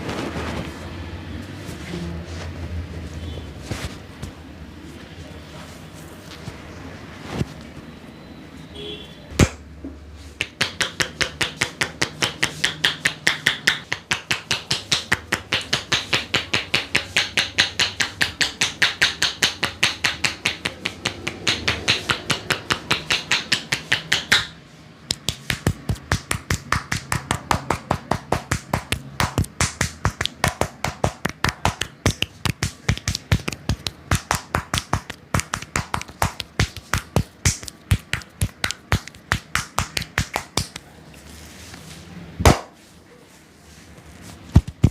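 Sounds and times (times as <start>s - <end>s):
hands slapping in massage: 10.4s - 40.9s, 42.4s - 42.8s, 44.5s - 44.9s.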